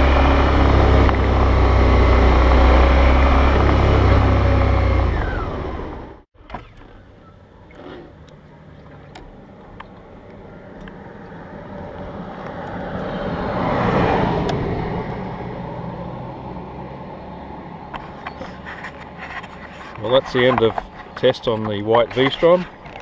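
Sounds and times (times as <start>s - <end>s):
motorcycle engine running: 0.0s - 6.2s
road noise: 0.0s - 23.0s.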